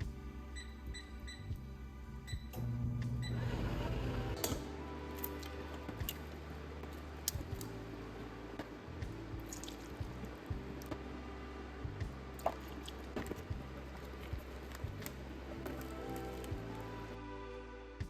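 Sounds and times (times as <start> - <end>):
batter squishing and dripping: 9.0 - 11.1, 12.0 - 17.1.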